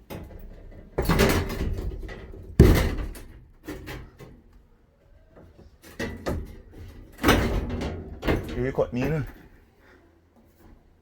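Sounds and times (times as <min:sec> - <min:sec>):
heavy thump: 0:02.6 - 0:03.3
knocking and handling noise: 0:02.6 - 0:03.3.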